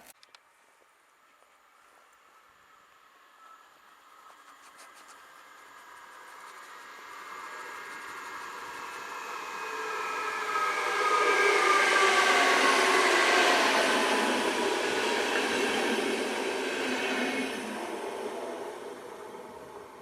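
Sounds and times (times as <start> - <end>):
train passing: 5.2 - 20.0.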